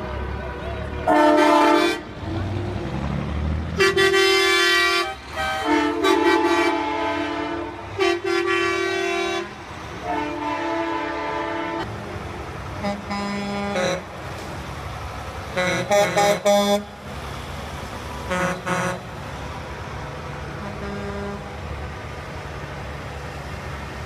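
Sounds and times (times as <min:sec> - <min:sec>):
truck air horns blowing: 0:01.0 - 0:02.2, 0:03.8 - 0:11.9, 0:12.8 - 0:14.1, 0:15.5 - 0:17.1, 0:18.2 - 0:19.1, 0:20.6 - 0:21.6.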